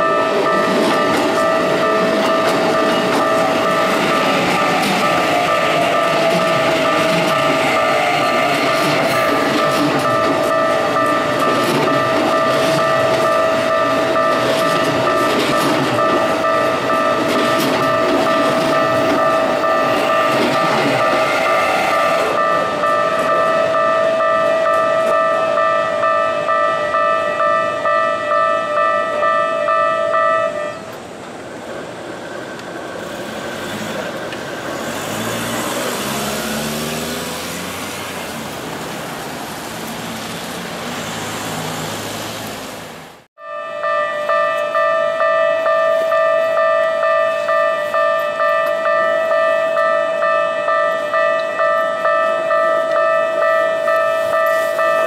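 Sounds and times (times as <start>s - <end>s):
level-crossing alarm ringing: 0.0s - 30.9s, 43.4s - 55.0s
train clattering over crossing: 0.0s - 42.5s, 43.8s - 55.0s
vehicle engine pulling away: 34.7s - 38.9s.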